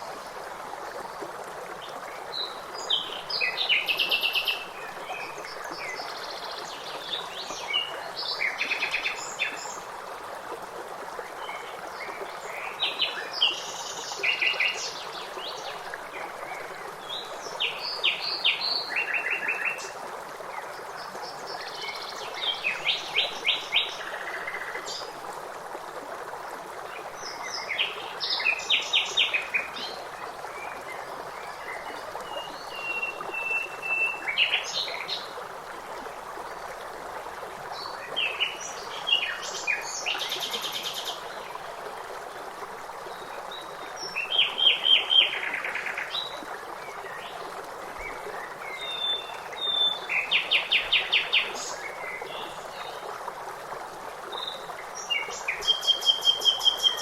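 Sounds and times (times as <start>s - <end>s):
running water: 0.0s - 57.0s
songbird singing: 54.3s - 57.0s.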